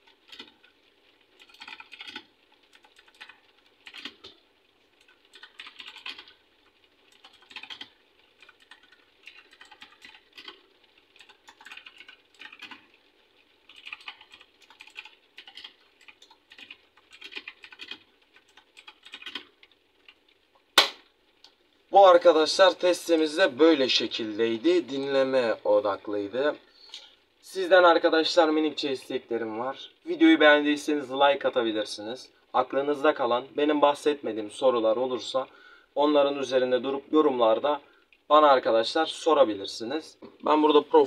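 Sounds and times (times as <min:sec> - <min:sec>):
mechanical keyboard typing: 0:00.0 - 0:00.7, 0:01.4 - 0:04.4, 0:05.0 - 0:06.4, 0:07.1 - 0:13.0, 0:13.6 - 0:19.6.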